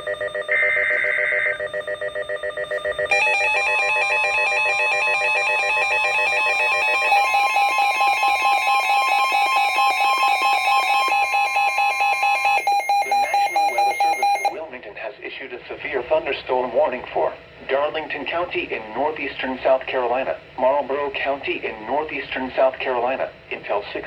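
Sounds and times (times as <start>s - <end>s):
pulsing electronic alert alarm: 0.0s - 14.6s
steady warning tone: 0.0s - 14.6s.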